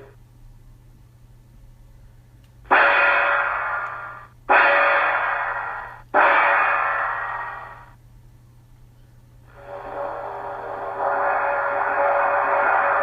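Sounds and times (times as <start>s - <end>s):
gong strokes ringing: 2.7s - 8.0s.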